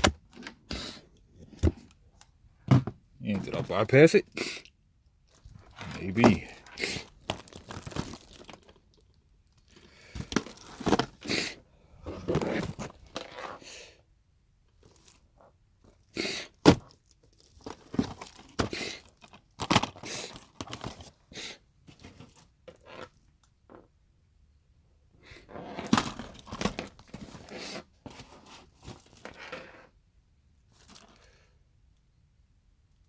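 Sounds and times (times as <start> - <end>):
plastic cases rustling and clacking: 0.0 - 4.1, 5.3 - 11.3, 12.0 - 13.6, 16.6 - 21.2, 21.8 - 22.8, 25.8 - 29.6.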